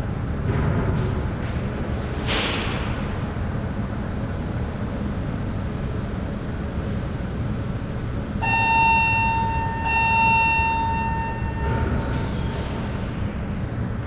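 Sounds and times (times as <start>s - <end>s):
distant city traffic rumble: 0.0s - 14.0s
distant horn-like tone: 8.4s - 13.0s.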